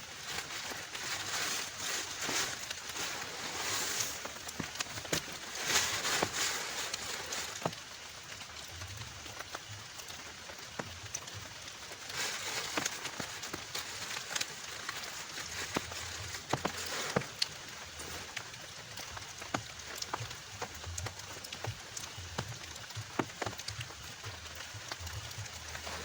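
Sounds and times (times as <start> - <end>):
heavy rain falling: 0.0 - 26.0.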